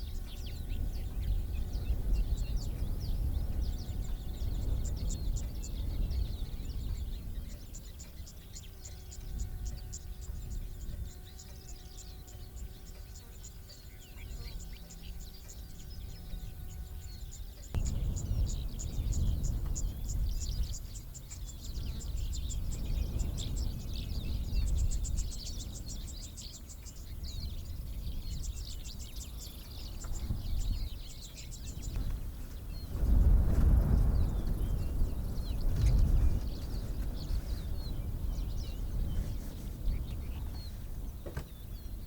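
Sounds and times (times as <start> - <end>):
birds chirping: 0.0 - 42.0
low rumble: 17.8 - 25.0.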